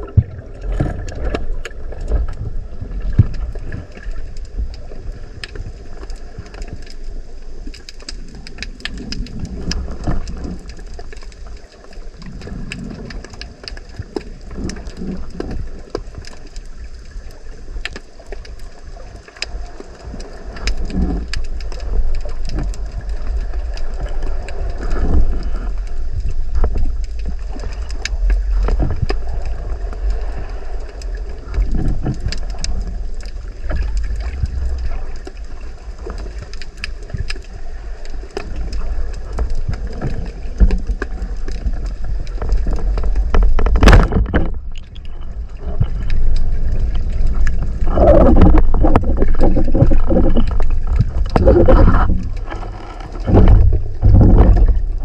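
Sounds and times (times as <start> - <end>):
low rumble of water movement: 0.0 - 55.0
underwater clicks and crackles: 0.0 - 55.0
rushing water whoosh: 37.5 - 55.0.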